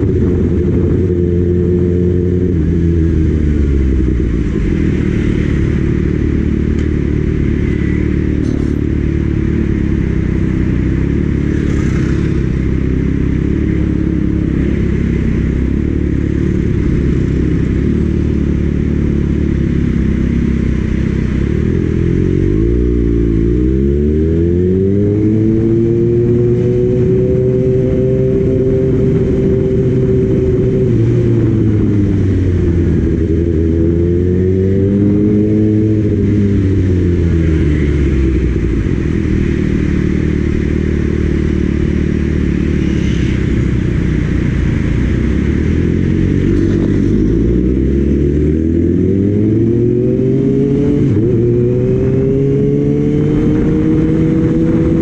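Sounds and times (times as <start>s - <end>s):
wind noise: 0.0s - 8.8s, 24.3s - 55.0s
motorcycle engine running: 0.0s - 55.0s.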